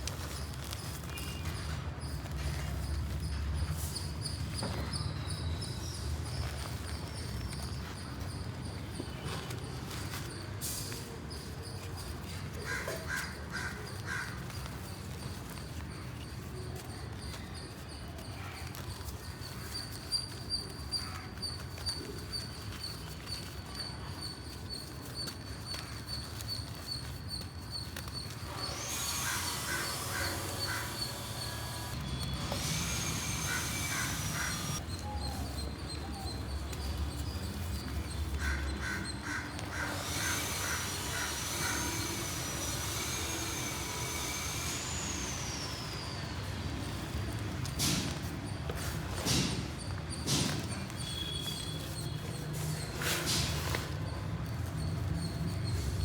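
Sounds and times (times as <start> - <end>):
crows cawing: 12.6 - 14.7, 28.7 - 31.6, 33.1 - 34.8, 38.3 - 42.4.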